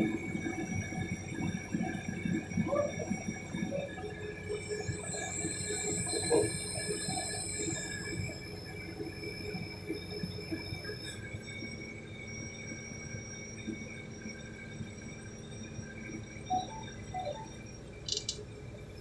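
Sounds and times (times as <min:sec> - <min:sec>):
hydraulic excavators running: 0:18.1 - 0:18.4.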